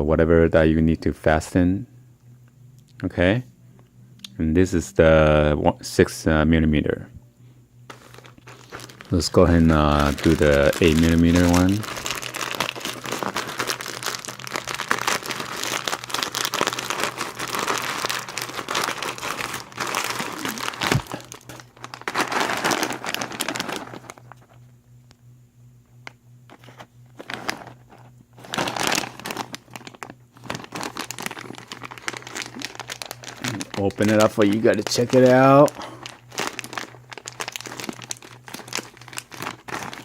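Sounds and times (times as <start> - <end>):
plastic packaging crinkling: 7.9 - 24.8, 26.0 - 40.0.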